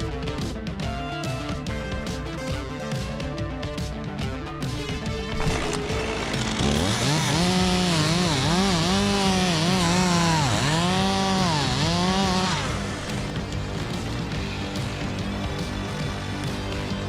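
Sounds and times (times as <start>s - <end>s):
chainsaw cutting wood: 5.0s - 17.0s.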